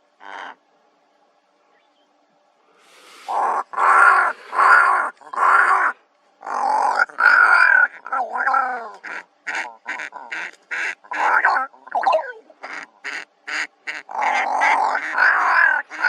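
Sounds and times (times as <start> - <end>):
ravens calling: 0.0 - 0.6, 2.8 - 16.0.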